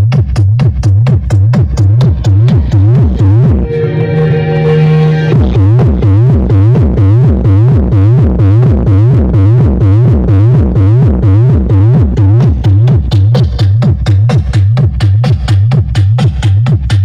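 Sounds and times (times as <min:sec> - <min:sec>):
electronic dance music: 0:00.0 - 0:17.0
rising synth sweep: 0:02.2 - 0:06.2.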